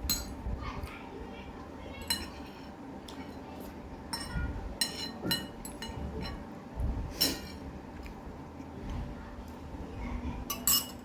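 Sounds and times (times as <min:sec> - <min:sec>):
cutlery clinking against dish: 0:02.0 - 0:03.4, 0:04.1 - 0:06.5, 0:07.2 - 0:07.7, 0:10.5 - 0:11.0.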